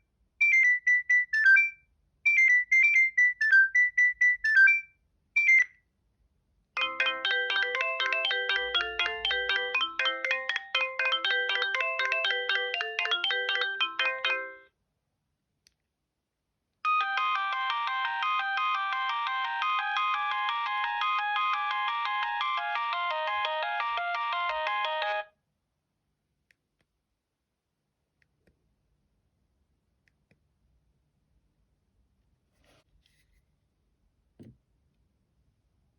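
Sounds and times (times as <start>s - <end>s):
mobile phone ringtone melodies: 6.8s - 14.7s, 16.9s - 25.3s.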